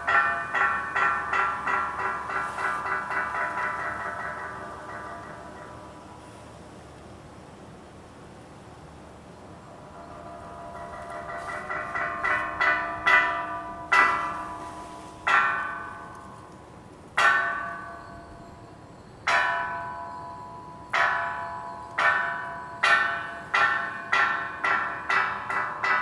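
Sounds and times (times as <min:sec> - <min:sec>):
wind bell ringing: 0:00.0 - 0:05.9, 0:10.1 - 0:26.0.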